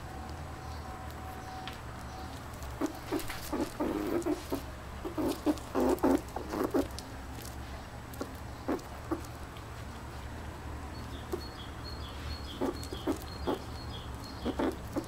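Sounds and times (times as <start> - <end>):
squirrel making short calls: 2.7 - 6.9, 8.2 - 9.3, 12.4 - 15.0.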